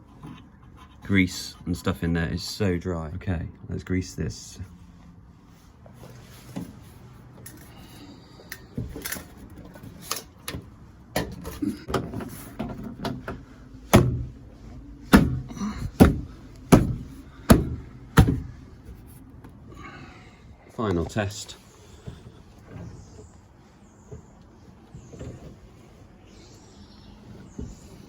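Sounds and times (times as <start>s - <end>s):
window mechanism knocks and clunks: 9.7s - 18.7s.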